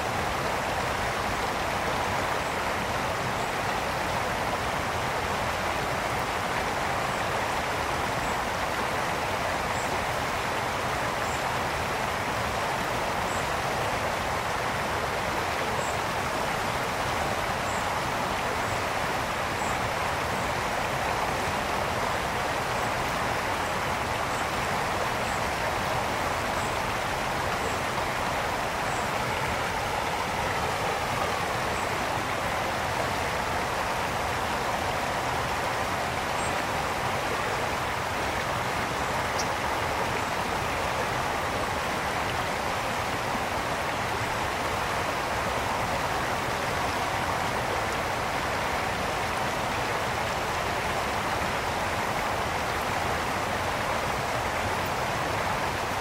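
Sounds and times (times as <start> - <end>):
brook flowing over stones: 0.0 - 56.0.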